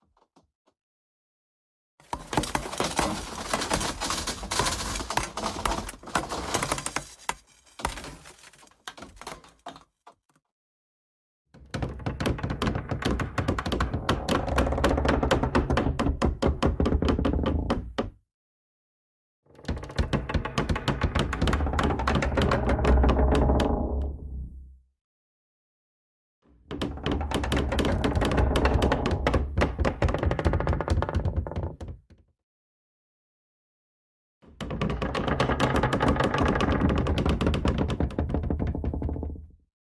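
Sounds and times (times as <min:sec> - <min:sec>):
short creaks and scrapes: 0:02.6 - 0:09.7
grinding creak: 0:13.9 - 0:15.3, 0:21.4 - 0:24.1, 0:26.9 - 0:29.4.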